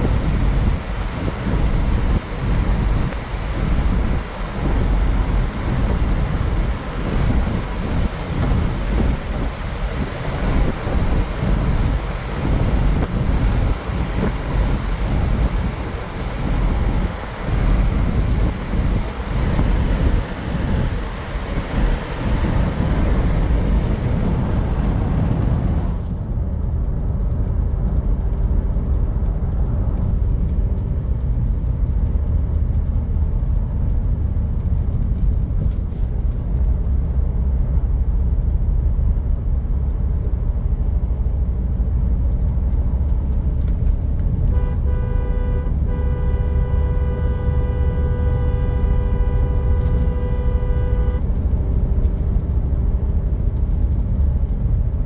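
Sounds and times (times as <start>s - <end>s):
wind-like hiss: 0.0s - 26.1s
car engine and road noise: 0.0s - 55.0s
vehicle horn: 44.5s - 51.3s.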